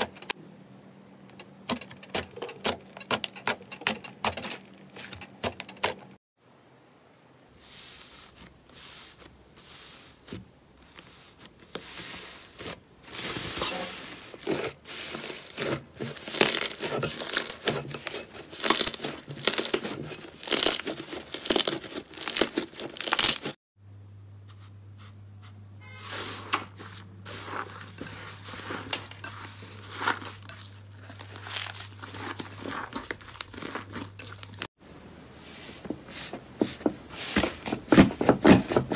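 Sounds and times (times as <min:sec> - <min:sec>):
slime crackling and tearing: 0:15.0 - 0:23.6, 0:30.8 - 0:34.6.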